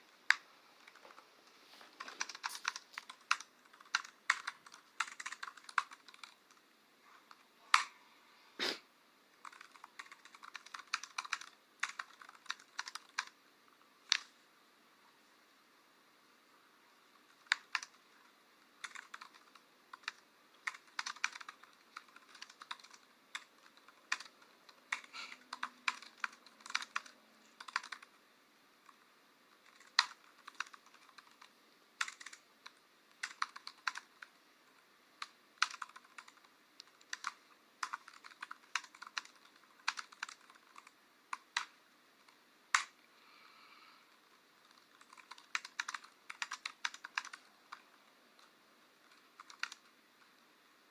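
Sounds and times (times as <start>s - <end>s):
typing on computer keyboard: 2.0s - 6.6s, 9.4s - 13.4s, 14.1s - 14.3s, 17.2s - 28.2s, 28.8s - 34.3s, 35.2s - 43.0s, 44.2s - 49.9s.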